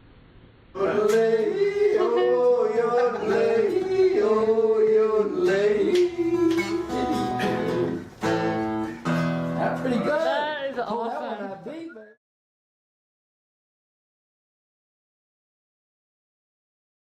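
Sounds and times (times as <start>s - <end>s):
acoustic guitar: 0.0s - 11.7s
person singing: 0.8s - 8.4s.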